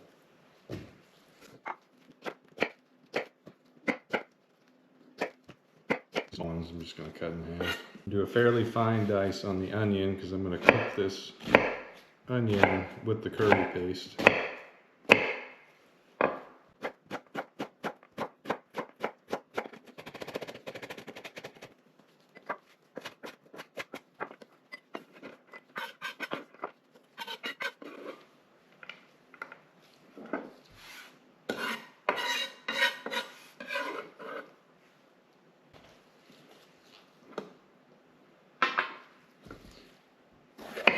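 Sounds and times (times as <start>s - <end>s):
knife chopping on cutting board: 12.5s - 15.5s
knife blade scraping board: 24.9s - 28.2s, 30.8s - 34.5s.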